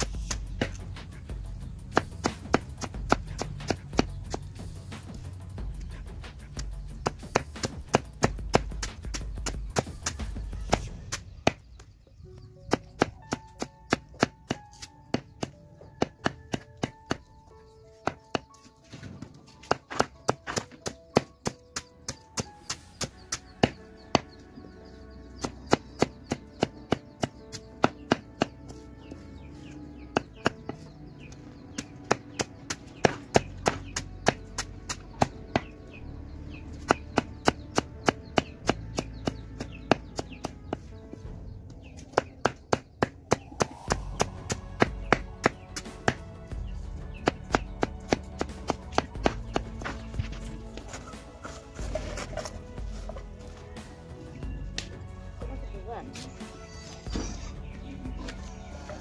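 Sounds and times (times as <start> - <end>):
blade chopping plant stem: 0.0 - 1.0, 1.8 - 5.1, 6.5 - 11.9, 12.6 - 17.3, 18.0 - 24.4, 25.3 - 28.8, 31.6 - 35.8, 36.7 - 41.0, 41.9 - 46.3, 47.0 - 52.6
background music with melody: 0.0 - 59.0.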